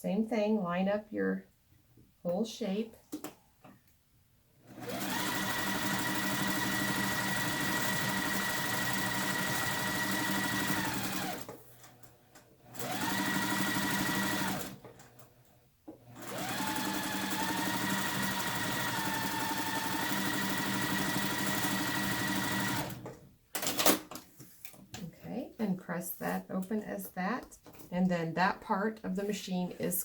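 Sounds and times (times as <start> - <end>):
sewing machine stitching: 4.6 - 24.0.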